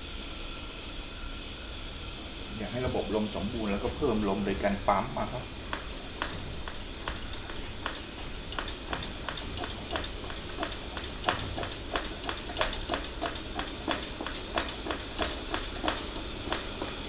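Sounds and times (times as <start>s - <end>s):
steady hiss: 0.0s - 17.0s
hand air pump clicking: 5.7s - 17.0s.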